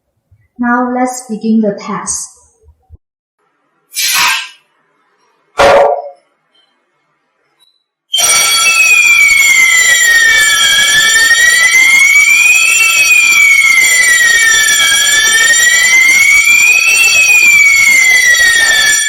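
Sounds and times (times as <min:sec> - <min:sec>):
fire alarm wailing tone: 0:07.6 - 0:19.0.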